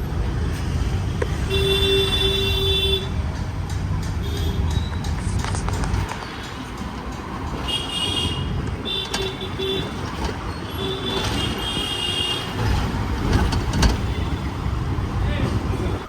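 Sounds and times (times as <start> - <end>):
traffic engine and road noise: 0.0 - 16.0
vehicle horns honking: 1.2 - 3.3, 4.1 - 5.1, 7.5 - 14.8.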